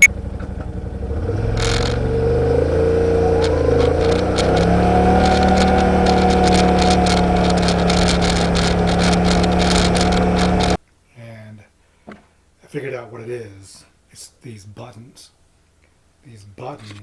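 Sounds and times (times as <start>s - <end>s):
vehicle engine running: 0.0s - 10.8s
rapid clicking rattle of camera buttons: 3.5s - 10.8s.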